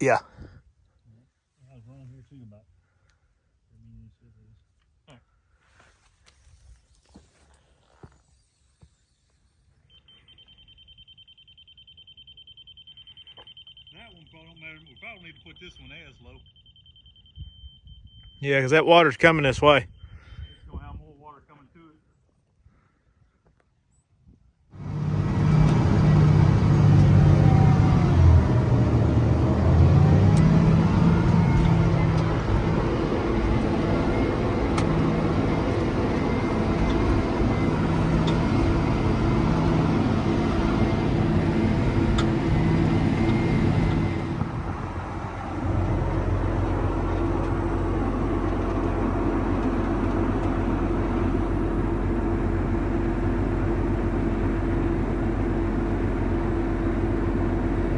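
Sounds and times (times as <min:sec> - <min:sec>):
heavy diesel engine running: 0:24.7 - 0:57.9.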